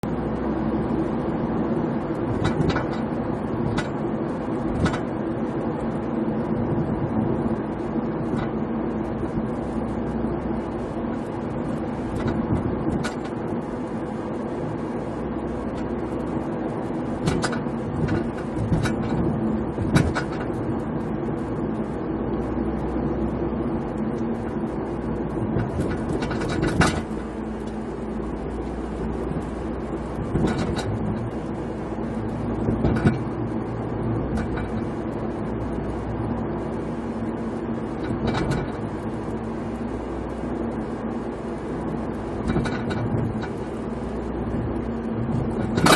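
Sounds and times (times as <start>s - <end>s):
car engine and road noise: 0.0s - 45.9s
loose part clunking and rattling: 2.3s - 4.0s, 4.7s - 5.2s, 12.0s - 13.4s, 17.2s - 20.7s, 25.3s - 31.6s, 32.5s - 33.4s, 34.3s - 35.0s, 38.0s - 39.0s, 42.4s - 45.9s.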